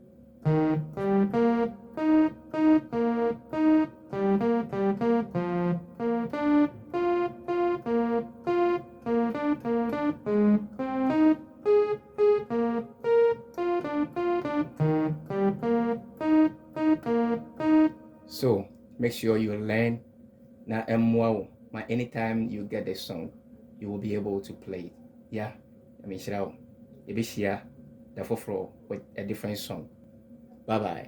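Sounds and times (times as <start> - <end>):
electronic keyboard playing slowly: 0.0 - 18.5.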